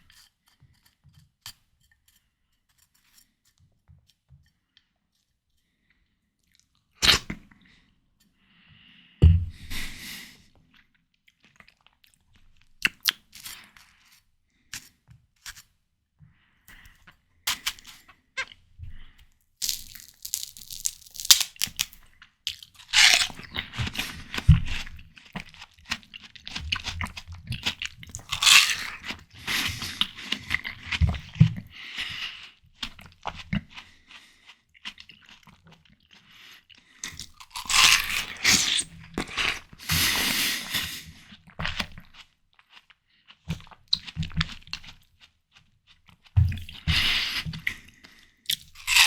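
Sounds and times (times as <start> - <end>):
crunchy watermelon chewing: 19.6 - 49.0
wet slurping: 37.9 - 41.2.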